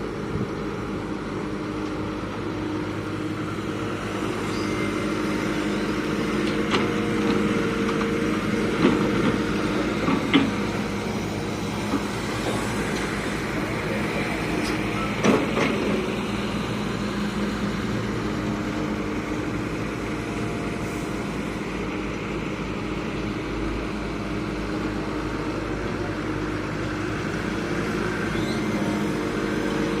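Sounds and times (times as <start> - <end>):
heavy diesel machinery running: 0.0 - 30.0.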